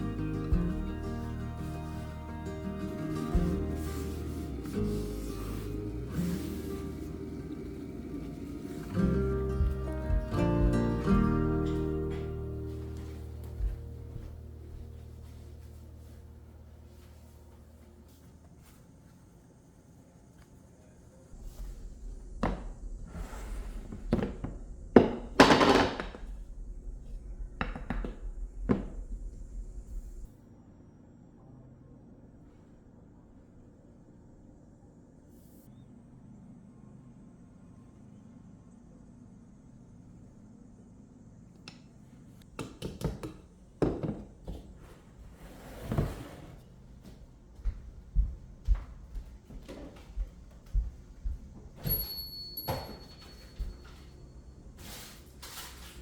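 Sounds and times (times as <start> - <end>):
low steady hum: 0.0 - 42.5
kitchen items knocking on counter: 24.1 - 26.3, 27.6 - 29.0, 42.6 - 44.7
short rustle: 53.0 - 56.0.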